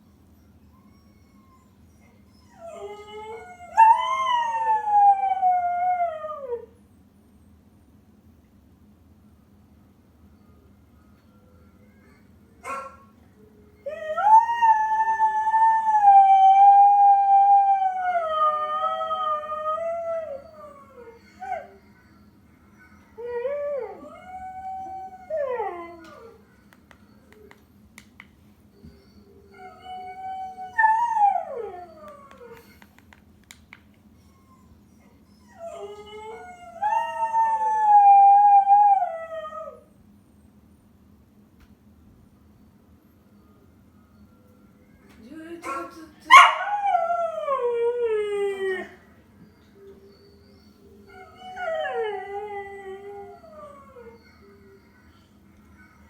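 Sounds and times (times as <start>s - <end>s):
dog howling: 45.7s - 56.0s.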